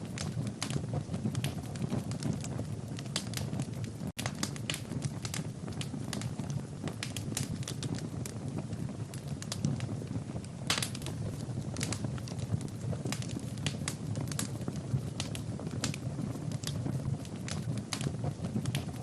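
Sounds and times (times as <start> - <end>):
low rumble of flames: 0.0 - 19.0
wood fire crackling and popping: 0.0 - 19.0.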